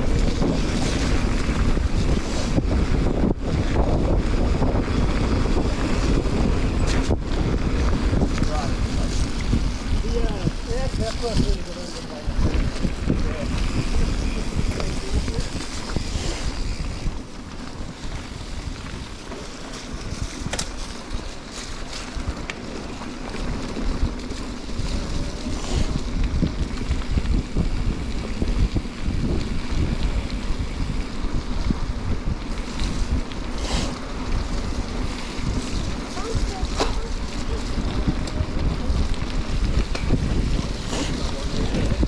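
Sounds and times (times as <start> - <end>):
bike tyres rumbling on trail: 0.0 - 42.0
wind buffeting microphone: 0.0 - 42.0
bike clicks and knocks: 12.4 - 31.6.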